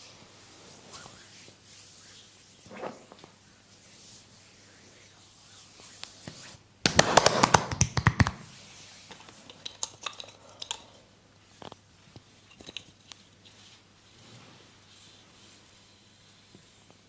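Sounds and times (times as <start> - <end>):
hands slapping on body: 6.8 - 8.5.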